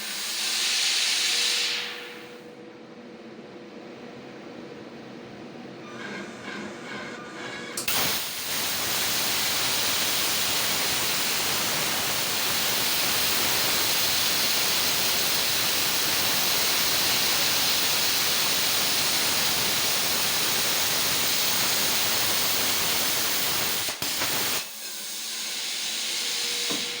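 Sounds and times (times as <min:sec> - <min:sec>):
plasma cutter hissing: 0:00.1 - 0:02.4, 0:07.8 - 0:27.0.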